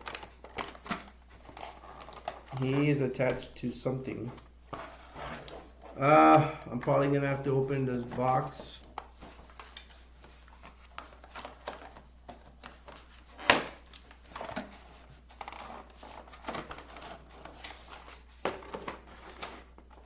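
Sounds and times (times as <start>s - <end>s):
cardboard packaging crinkling: 0.0s - 4.3s.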